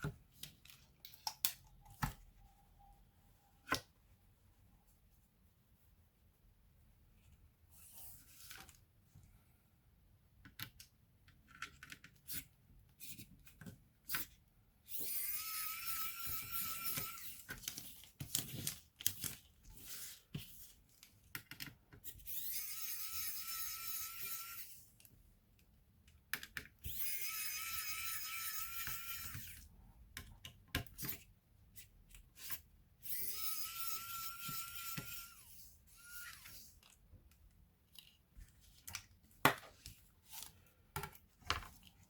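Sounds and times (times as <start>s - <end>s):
small motor tool whining: 14.9s - 17.5s, 22.2s - 24.8s, 26.8s - 29.6s, 33.0s - 36.7s.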